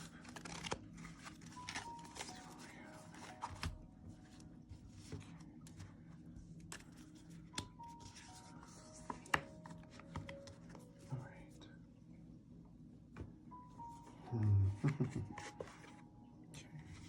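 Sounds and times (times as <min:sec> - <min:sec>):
cards being shuffled: 0:00.0 - 0:03.8, 0:06.6 - 0:10.8, 0:14.9 - 0:16.0
soft background music: 0:00.0 - 0:17.0.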